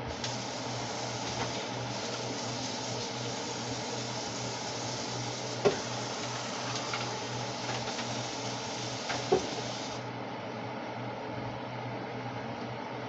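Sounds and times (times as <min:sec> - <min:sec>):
steady hiss: 0:00.0 - 0:10.1.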